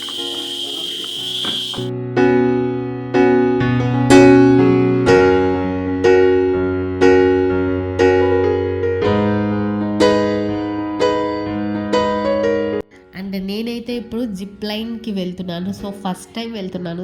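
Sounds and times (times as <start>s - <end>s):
slow electric piano piece: 0.0s - 12.9s.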